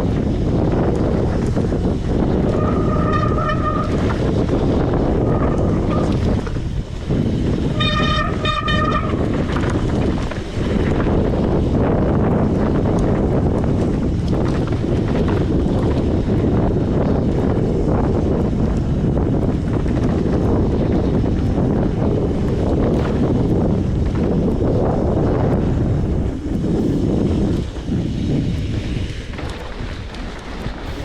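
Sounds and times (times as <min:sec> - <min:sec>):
wind and trail rumble: 0:00.0 - 0:31.0
disc brake squeal: 0:02.5 - 0:04.1.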